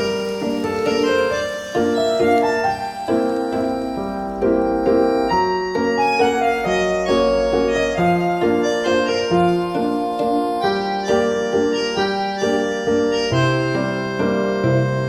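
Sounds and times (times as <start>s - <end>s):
gentle piano melody: 0.0s - 15.0s.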